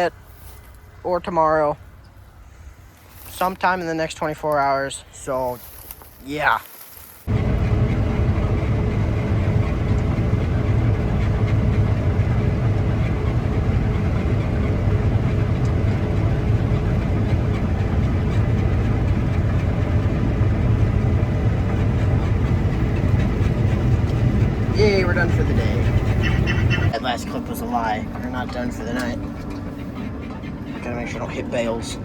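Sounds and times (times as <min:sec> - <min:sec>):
low engine drone: 0:07.3 - 0:32.0.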